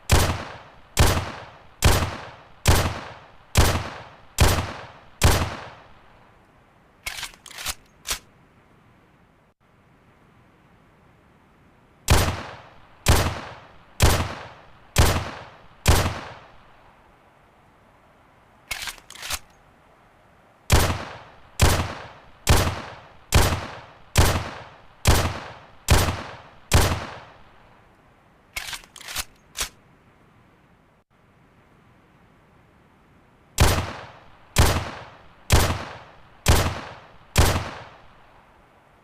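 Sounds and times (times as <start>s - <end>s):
pistol shots: 0.1s - 6.0s, 12.1s - 16.6s, 20.7s - 27.4s, 33.6s - 38.1s
quiet clicks: 18.7s - 19.6s.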